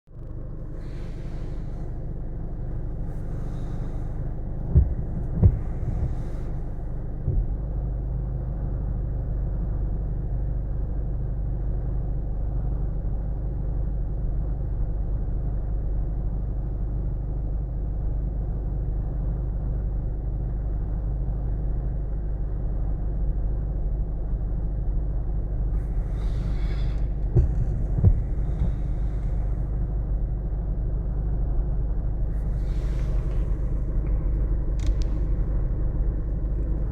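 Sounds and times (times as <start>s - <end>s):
engine idling: 0.1s - 8.5s, 25.7s - 36.9s
sharp knocks: 3.1s - 7.6s, 25.8s - 29.9s.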